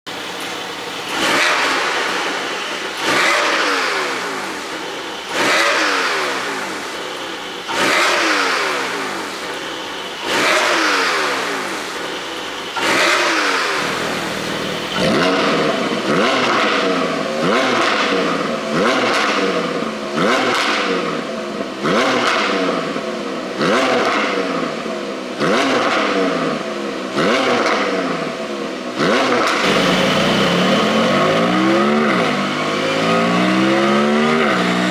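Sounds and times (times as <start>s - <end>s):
car engine revving: 0.1s - 23.0s, 29.0s - 34.9s
exhaust pops and crackles: 12.4s - 16.8s, 29.6s - 34.9s.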